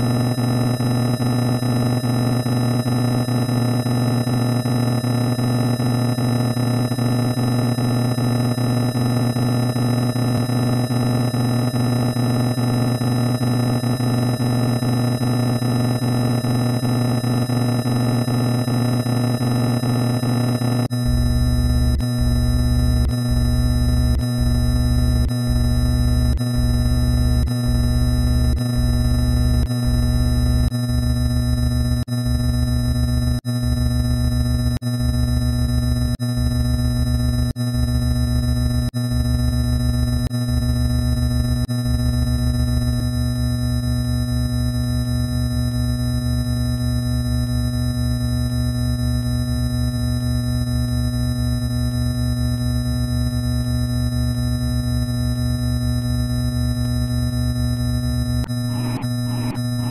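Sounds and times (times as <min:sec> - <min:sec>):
harsh electronic drone: 0:19.8 - 0:33.9, 0:58.4 - 0:59.9.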